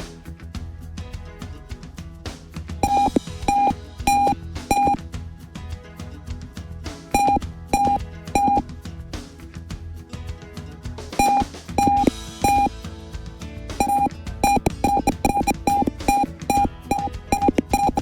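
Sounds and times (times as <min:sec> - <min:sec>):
background music with drum beat: 0:00.0 - 0:18.0
piezo buzzer high beeps: 0:02.8 - 0:05.0, 0:07.2 - 0:08.6, 0:11.2 - 0:12.7, 0:13.8 - 0:18.0.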